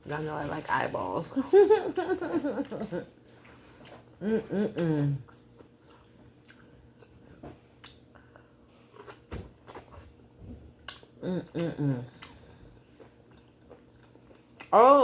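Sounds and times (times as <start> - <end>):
person giggling: 1.4 - 3.1
person chewing wetly: 3.4 - 10.1, 10.7 - 14.8.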